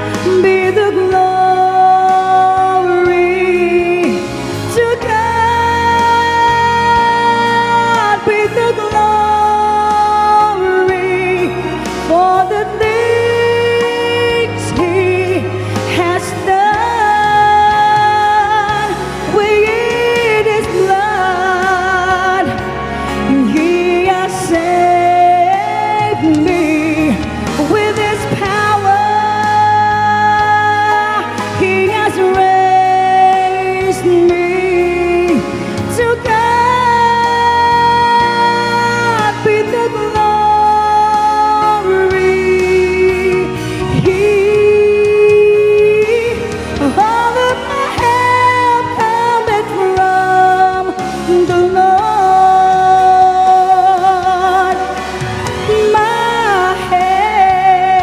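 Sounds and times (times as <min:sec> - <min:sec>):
gospel singing: 0:00.0 - 0:58.0
instrumental accompaniment: 0:00.0 - 0:58.0.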